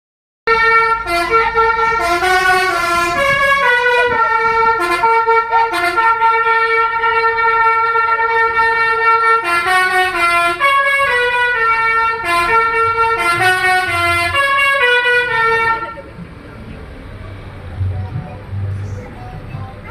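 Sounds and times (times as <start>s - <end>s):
bus musical horn playing tune: 0.5s - 16.1s.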